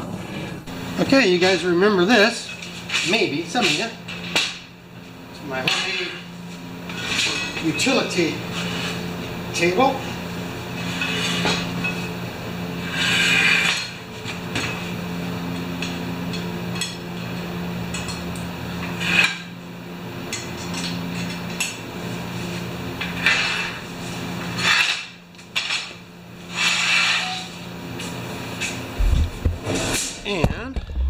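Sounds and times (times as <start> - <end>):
steady low hum: 0.0 - 31.0
metal clanking and scraping: 6.9 - 8.0, 10.8 - 12.1, 24.5 - 27.6.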